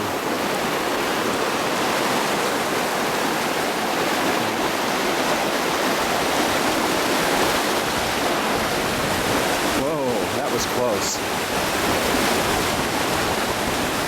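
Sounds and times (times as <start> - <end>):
stream and waterfall rushing: 0.0 - 14.0.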